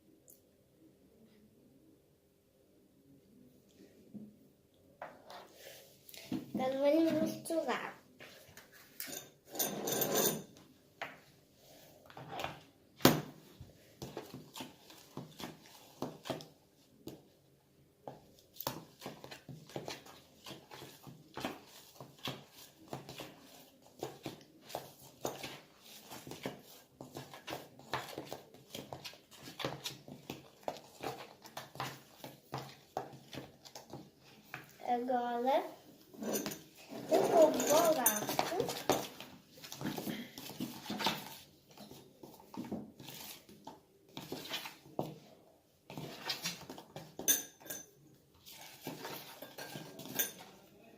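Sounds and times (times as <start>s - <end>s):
utensil scraping and tapping bowl: 18.6s - 34.8s, 36.2s - 45.2s, 45.9s - 50.6s.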